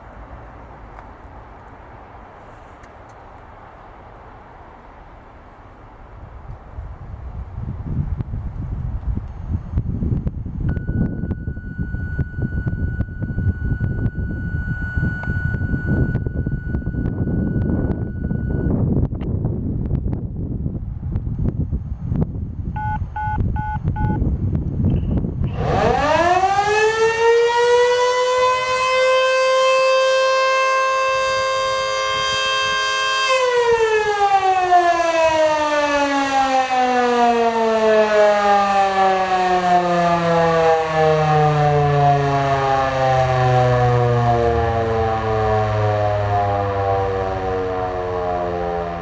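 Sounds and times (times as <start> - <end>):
wind noise on microphone: 5.6 - 36.4
fire siren wailing: 9.8 - 18.8, 25.4 - 49.0
radio activation tone beeps: 10.7 - 18.8, 22.8 - 24.2.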